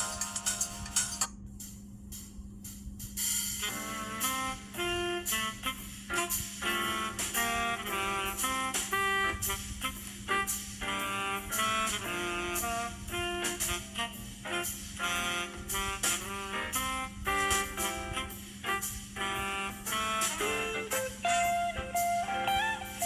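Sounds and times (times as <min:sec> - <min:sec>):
ringtone melody: 0:00.0 - 0:01.3, 0:19.3 - 0:23.0
steady low hum: 0:00.0 - 0:23.0.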